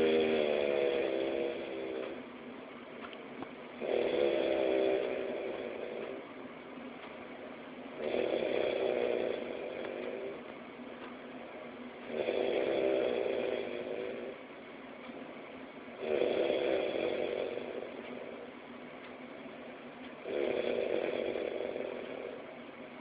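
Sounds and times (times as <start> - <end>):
man snoring: 0.0 - 2.2, 3.8 - 6.2, 8.0 - 10.4, 12.0 - 14.4, 16.0 - 18.4, 20.2 - 22.4
quiet breathing: 0.0 - 23.0.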